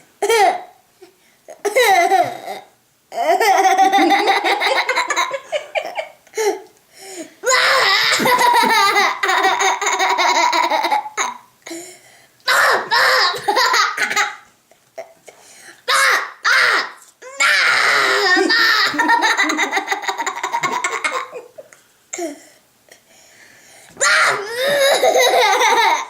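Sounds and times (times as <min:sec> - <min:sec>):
young boy laughing: 0:03.2 - 0:06.7, 0:07.5 - 0:11.4, 0:17.6 - 0:21.8, 0:24.1 - 0:26.0.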